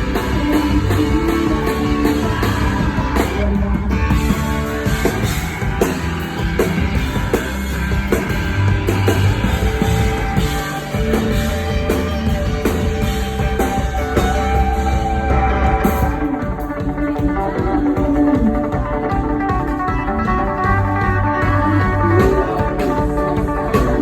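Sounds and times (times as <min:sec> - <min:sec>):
bass guitar: 0:00.0 - 0:24.0
drum kit and cymbals: 0:00.0 - 0:24.0
guitar: 0:00.0 - 0:24.0.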